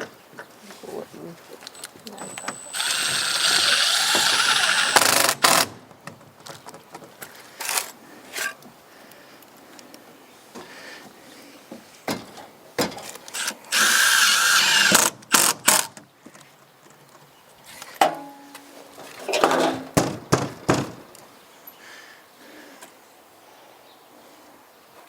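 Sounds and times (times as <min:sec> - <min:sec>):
cordless drill driving screw: 0:01.8 - 0:05.7, 0:13.3 - 0:15.9.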